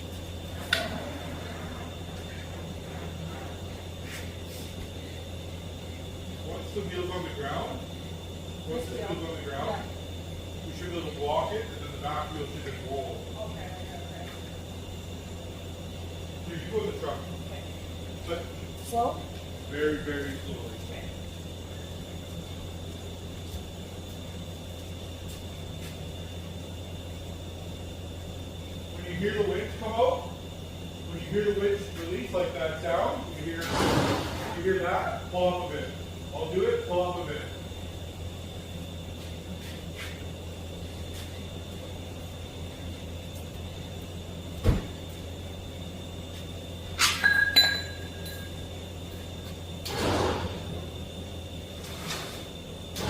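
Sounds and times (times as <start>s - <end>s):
truck engine idling: 0.0s - 53.0s
heavy thump: 44.6s - 45.0s
sharp metallic clank: 47.0s - 48.6s.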